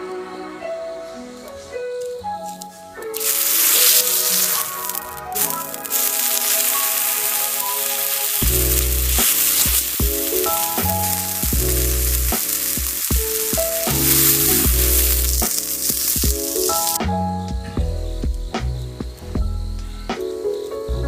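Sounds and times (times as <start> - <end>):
background music: 0.0 - 21.0
food sizzling in a frying pan: 3.2 - 17.0.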